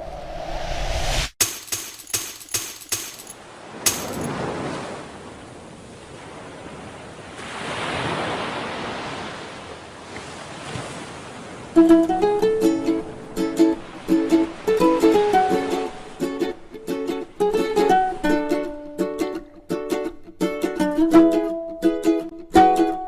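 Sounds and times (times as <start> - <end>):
ocean surf washing onto beach: 3.4 - 18.2
plucked string music: 11.8 - 23.0.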